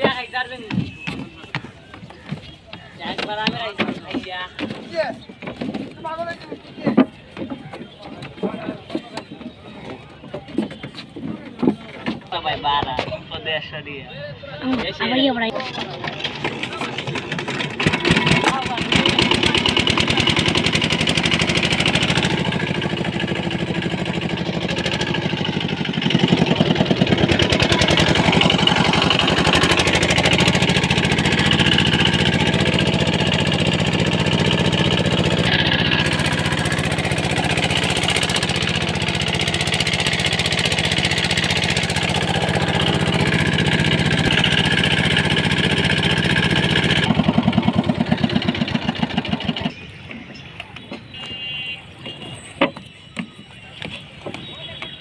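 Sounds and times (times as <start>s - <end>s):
boat diesel engine running: 15.1s - 55.0s.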